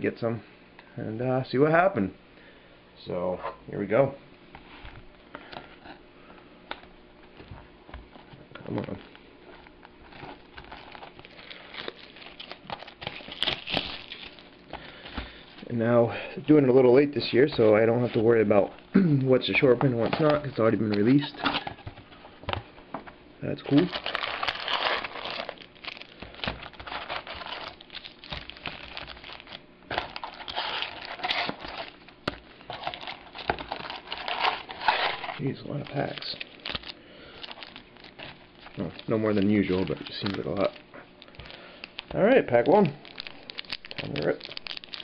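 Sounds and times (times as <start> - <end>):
plastic shrink wrap crinkling: 8.0 - 15.7, 23.6 - 45.0.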